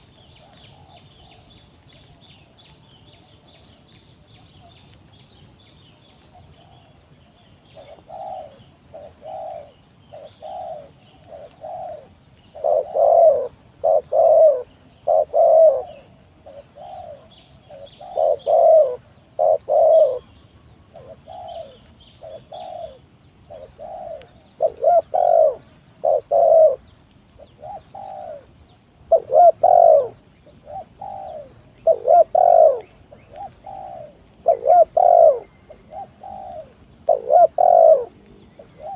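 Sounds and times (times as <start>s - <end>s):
dove cooing: 7.8s - 28.5s, 29.1s - 38.9s.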